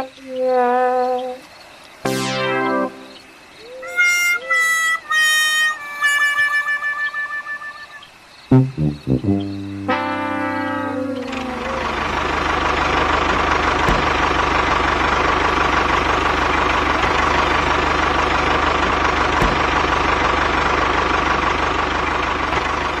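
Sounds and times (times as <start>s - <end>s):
tractor engine idling: 9.4s - 23.0s.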